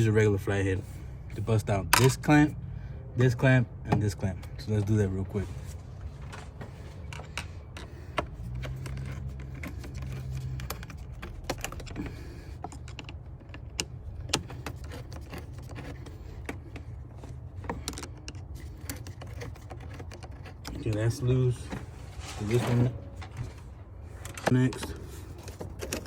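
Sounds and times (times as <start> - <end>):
screwdriver turning clamp screw: 7.1 - 21.4, 24.2 - 26.0.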